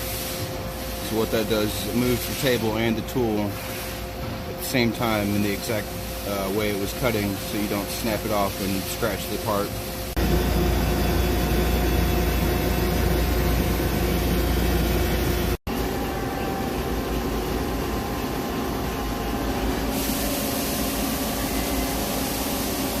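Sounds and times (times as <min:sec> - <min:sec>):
hiss: 0:00.0 - 0:02.8, 0:19.9 - 0:23.0
machine hum: 0:03.0 - 0:23.0.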